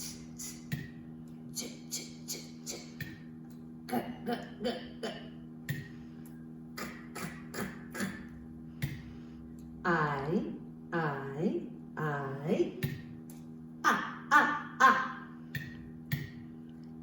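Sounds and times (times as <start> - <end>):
steady low hum: 0.0 - 17.0
woman saying letter sounds: 9.8 - 12.8.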